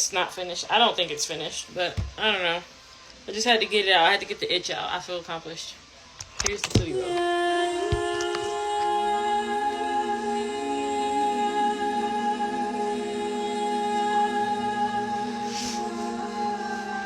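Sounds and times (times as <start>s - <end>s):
woman singing a cappella: 6.6s - 17.0s.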